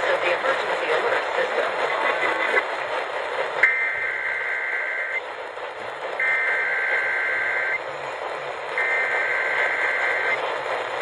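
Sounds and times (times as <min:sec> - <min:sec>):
radio static: 0:00.0 - 0:02.7, 0:06.2 - 0:07.8, 0:08.8 - 0:10.6
digital data tones: 0:06.2 - 0:07.8, 0:08.8 - 0:10.4.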